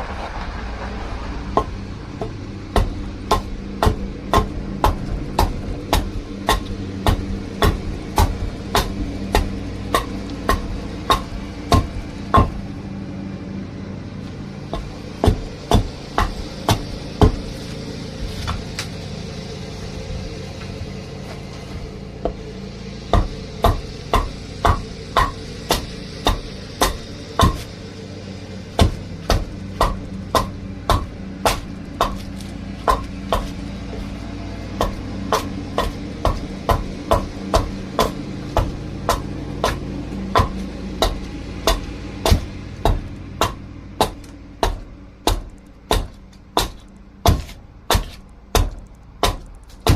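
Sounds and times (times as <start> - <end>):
steady low hum: 0.0 - 49.9
tool striking dry wood: 1.5 - 12.8, 14.2 - 19.0, 20.1 - 49.9.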